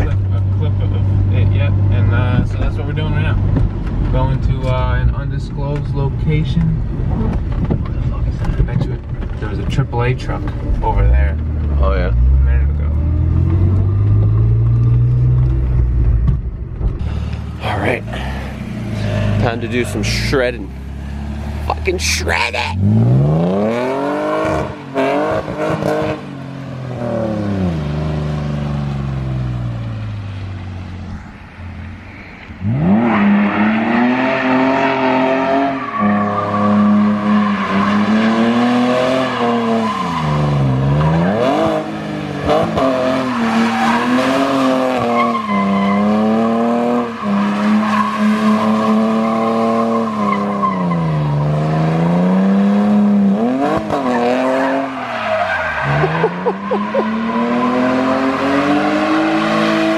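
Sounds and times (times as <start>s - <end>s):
car engine revving: 0.0s - 59.9s.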